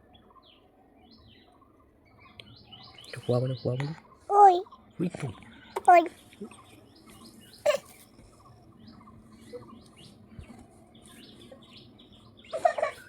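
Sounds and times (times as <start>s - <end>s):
small birds chirping: 0.0s - 13.0s
loud short bird calls: 7.5s - 8.1s.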